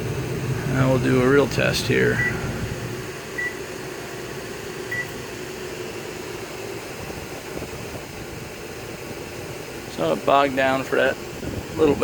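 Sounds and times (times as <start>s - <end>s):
air conditioner running: 0.0s - 12.0s
generator droning: 0.0s - 12.0s
microwave keypad beeps: 2.1s - 2.5s, 3.3s - 3.7s, 4.9s - 5.2s.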